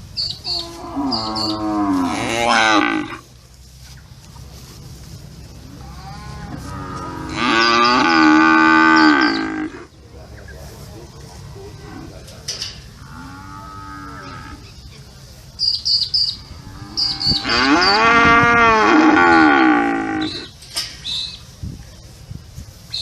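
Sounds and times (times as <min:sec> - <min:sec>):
cows mooing: 0:00.5 - 0:03.2, 0:05.7 - 0:09.9, 0:13.0 - 0:14.6, 0:16.4 - 0:20.5.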